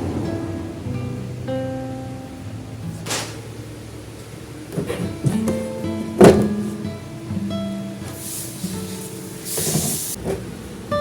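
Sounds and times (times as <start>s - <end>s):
soft guitar music: 0.0s - 11.0s
loud thump: 3.0s - 3.5s.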